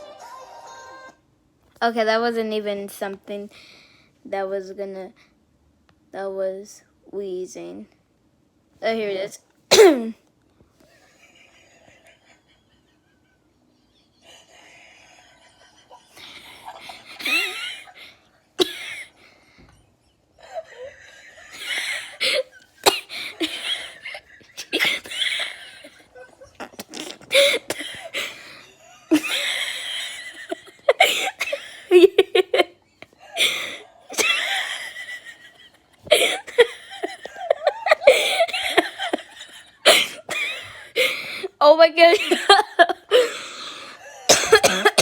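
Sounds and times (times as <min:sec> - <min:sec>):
wheezing laughter: 0:10.8 - 0:19.4, 0:20.0 - 0:41.5.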